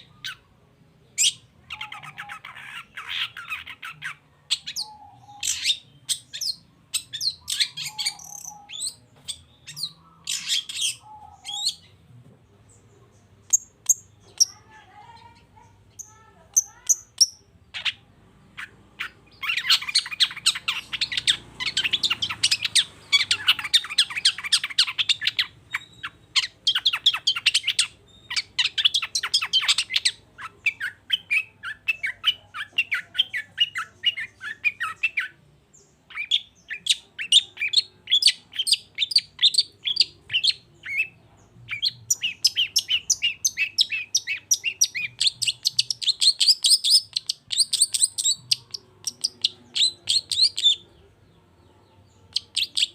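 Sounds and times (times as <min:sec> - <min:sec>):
bird singing sharp chirps: 0:18.6 - 0:35.4.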